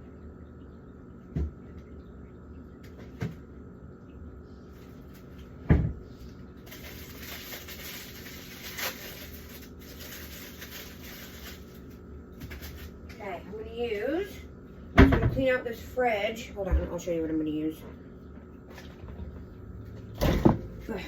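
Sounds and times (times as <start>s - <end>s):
cupboard door thump: 15.0s - 15.4s.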